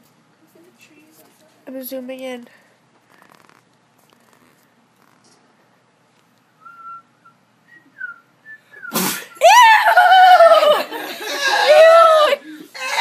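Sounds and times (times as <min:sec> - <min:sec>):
person sneezing: 0:08.9 - 0:09.4
loud high-pitched voice: 0:11.4 - 0:13.0.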